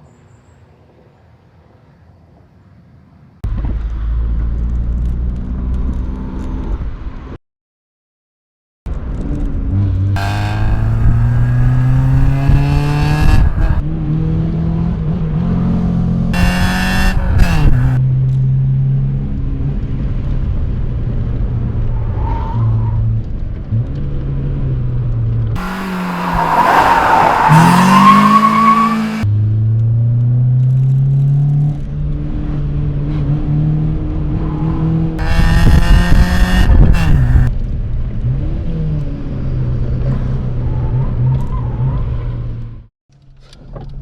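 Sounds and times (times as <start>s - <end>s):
car engine revving: 9.7s - 18.0s, 25.6s - 29.4s, 33.2s - 37.5s.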